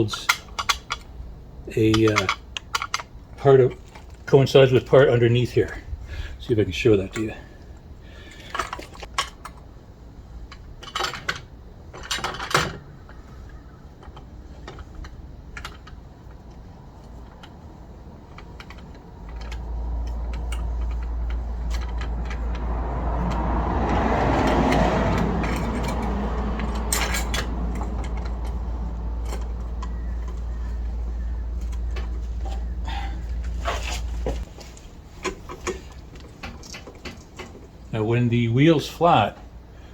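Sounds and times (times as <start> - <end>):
scissor jack clanking: 24.2 - 30.4.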